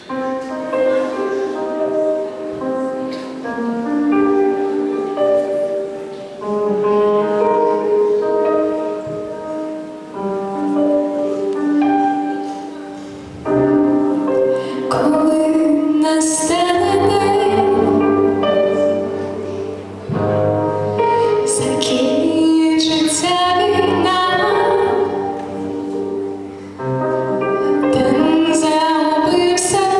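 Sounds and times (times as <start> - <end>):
musical accompaniment: 0.0 - 29.9
woman singing: 14.9 - 18.3, 21.5 - 25.4, 27.9 - 29.9.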